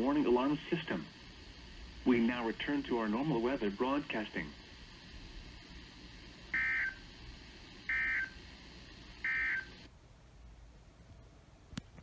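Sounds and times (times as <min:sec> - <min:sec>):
receiver hiss: 0:00.0 - 0:09.9.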